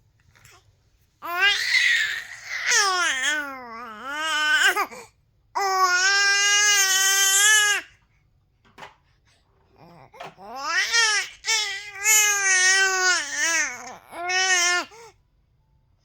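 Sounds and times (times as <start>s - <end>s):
baby crying: 1.2s - 5.0s, 5.6s - 7.9s, 9.8s - 15.1s.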